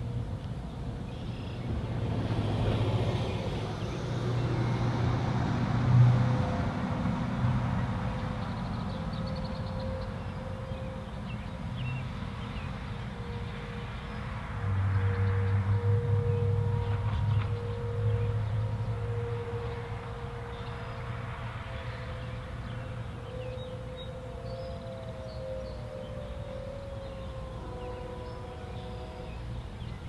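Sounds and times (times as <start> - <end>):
distant warning sirens: 0.0 - 30.0
vehicle passing by: 1.6 - 11.0, 11.6 - 30.0.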